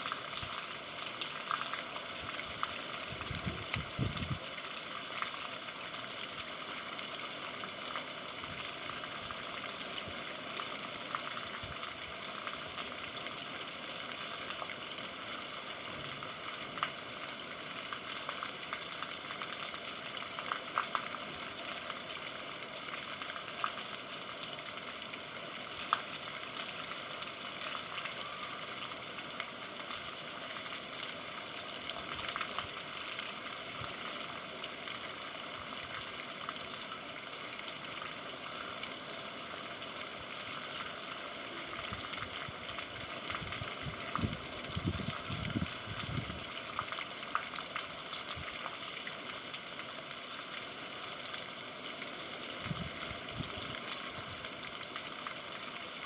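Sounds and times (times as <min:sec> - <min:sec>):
rain hiss: 0:00.0 - 0:56.0
raindrop ticks: 0:20.4 - 0:21.2.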